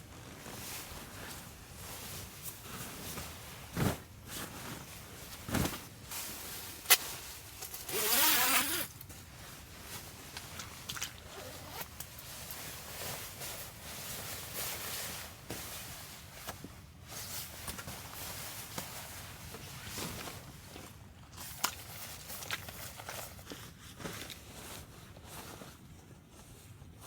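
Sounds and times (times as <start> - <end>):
zipper pulled: 7.8 - 8.9, 11.3 - 11.9.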